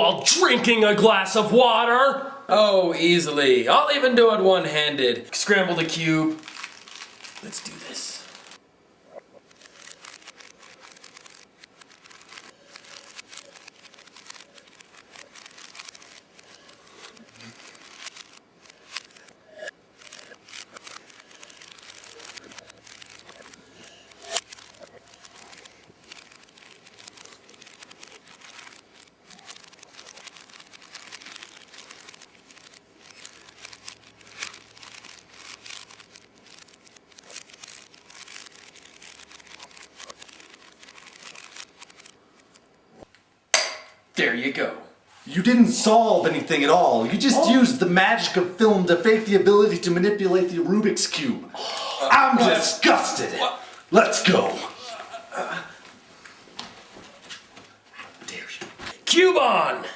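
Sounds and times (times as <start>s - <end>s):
puzzle cube clicking and rasping: 5.4s - 8.6s, 9.4s - 43.1s.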